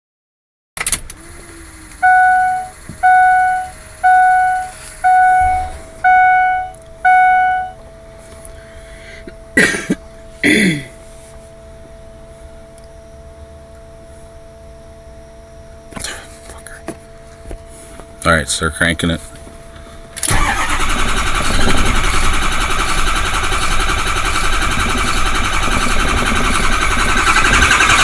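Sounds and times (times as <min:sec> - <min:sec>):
faint steady tone: 0:01.4 - 0:20.7
dashboard warning chime: 0:01.7 - 0:28.0
person coughing: 0:09.6 - 0:11.0.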